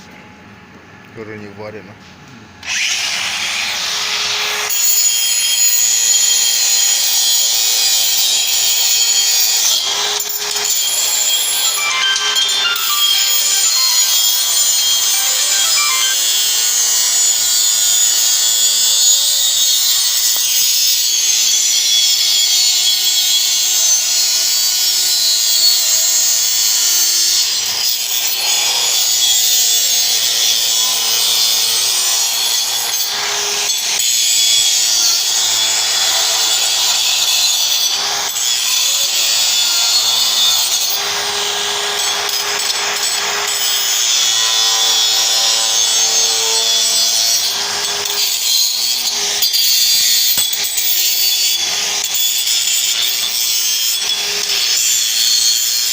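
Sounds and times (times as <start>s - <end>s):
angle grinder grinding steel: 2.6s - 55.9s.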